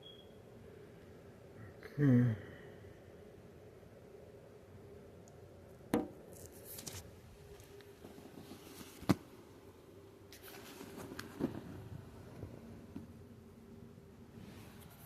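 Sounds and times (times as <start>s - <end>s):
low steady hum: 0.0s - 15.0s
faint rustling: 10.3s - 13.2s.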